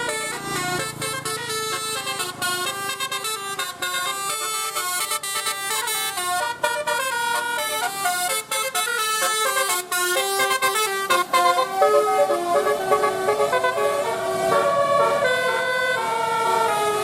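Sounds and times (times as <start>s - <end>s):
bus air horns playing a tune: 0.0s - 17.0s.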